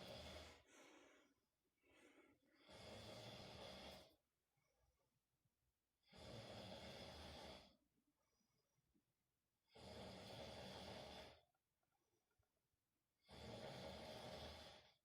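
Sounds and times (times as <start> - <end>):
man snoring: 0.0 - 0.7, 2.5 - 4.2, 6.0 - 7.8, 9.6 - 11.4, 13.2 - 15.0.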